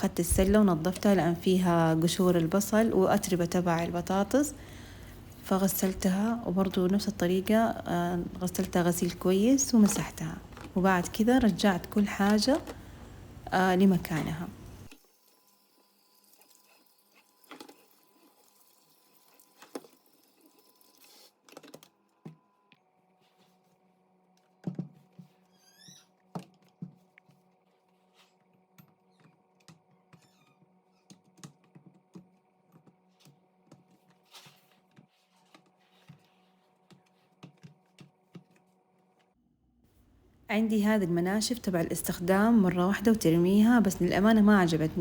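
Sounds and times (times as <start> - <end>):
low steady hum: 0.0 - 15.0, 40.0 - 45.0.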